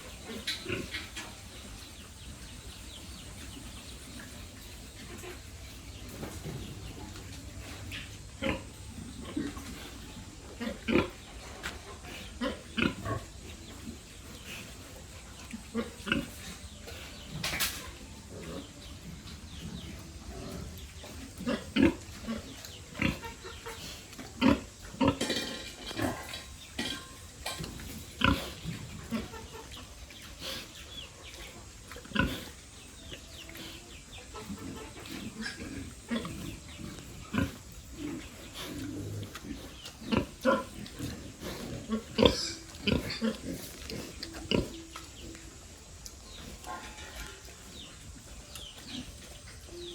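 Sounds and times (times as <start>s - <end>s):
pigs grunting: 0.0s - 2.3s, 2.9s - 49.9s.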